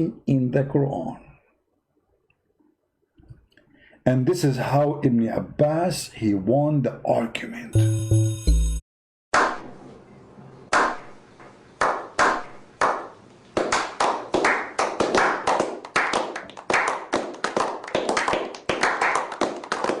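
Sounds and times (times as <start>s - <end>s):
hand clapping with echo: 11.8s - 20.0s.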